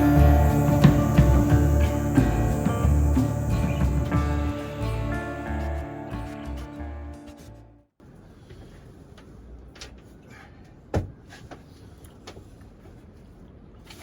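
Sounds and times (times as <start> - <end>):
background music: 0.0 - 7.8.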